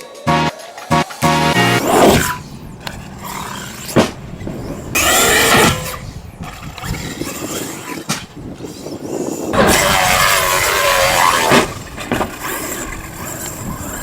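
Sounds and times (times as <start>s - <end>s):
tyre and ground noise: 0.0s - 14.0s
electric motor whining: 0.3s - 7.4s.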